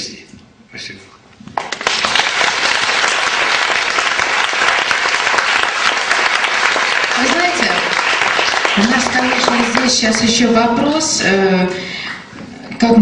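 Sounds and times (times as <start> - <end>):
audience applauding: 1.6 - 10.5.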